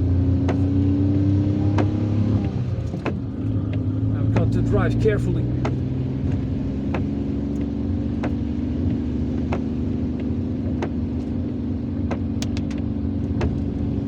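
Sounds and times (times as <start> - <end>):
car engine humming: 0.0 - 14.0
sharp clicks: 12.0 - 13.7.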